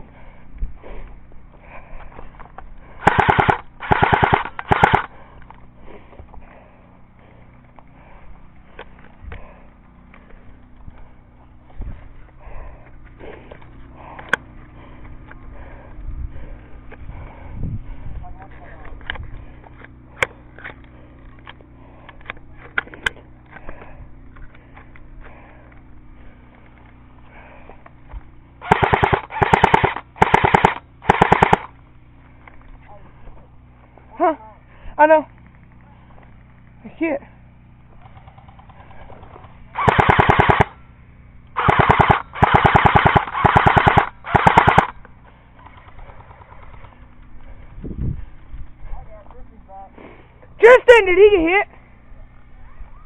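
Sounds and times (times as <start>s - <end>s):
low background rumble: 0.0s - 53.0s
loud cracks: 3.0s - 5.1s, 28.6s - 31.7s, 39.8s - 40.7s, 41.6s - 45.0s
airsoft gun firing bursts: 3.0s - 5.2s, 28.6s - 31.8s, 39.7s - 40.8s, 41.6s - 45.0s.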